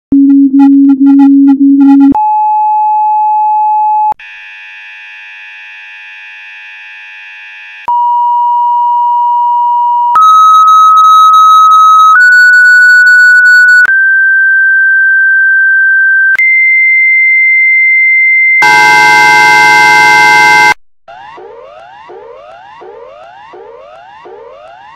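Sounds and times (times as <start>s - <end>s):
harsh many-tone blare: 0.1s - 2.2s, 18.6s - 24.9s
low pulsing beep: 0.1s - 4.2s.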